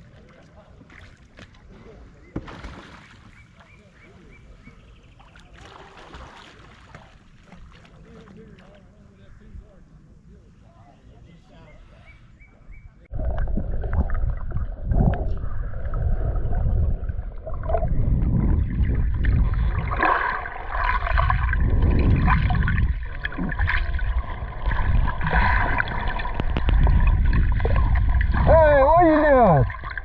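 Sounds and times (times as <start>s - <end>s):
water sloshing and gurgling: 0.0s - 9.0s, 13.1s - 30.0s
heavy low rumbling: 13.1s - 29.8s.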